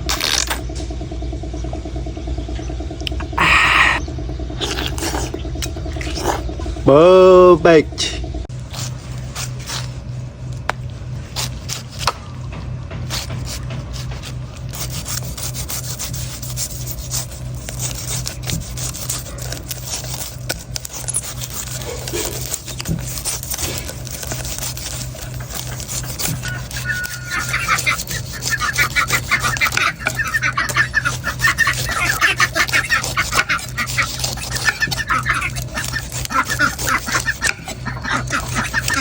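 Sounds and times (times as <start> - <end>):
knife cutting coconut: 0.0 - 0.7, 8.6 - 39.0
knife scraping coconut: 0.0 - 0.7, 3.1 - 4.0, 4.6 - 7.0, 8.5 - 39.0
steady low hum: 0.0 - 39.0.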